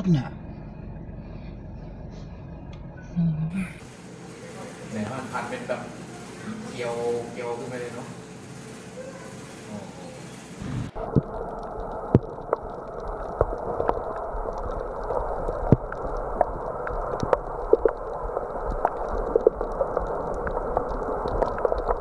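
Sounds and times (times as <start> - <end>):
muffled gurgling with sharp pops: 10.7 - 22.0.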